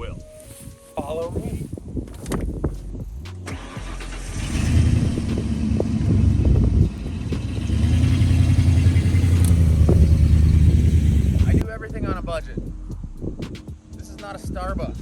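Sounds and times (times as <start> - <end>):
vehicle engine running: 2.6 - 11.6.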